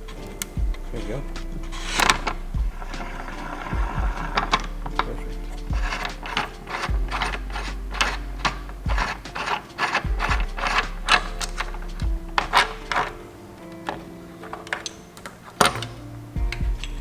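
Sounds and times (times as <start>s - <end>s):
ratchet clicking: 1.2s - 13.2s.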